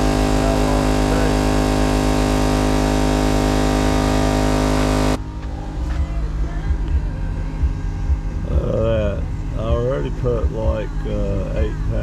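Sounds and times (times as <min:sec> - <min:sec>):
portable air compressor running: 0:00.0 - 0:05.2.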